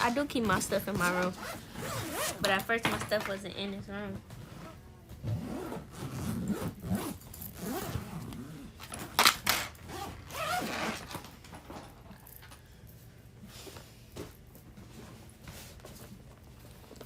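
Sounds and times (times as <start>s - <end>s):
clothes and bags rummaging: 0.0s - 17.0s
zipper rasp: 1.4s - 2.4s, 4.4s - 11.2s.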